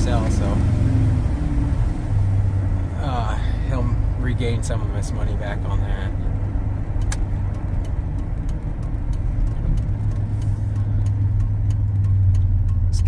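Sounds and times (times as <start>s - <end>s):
truck engine and road noise: 0.0s - 13.0s
light regular ticking: 4.1s - 13.0s.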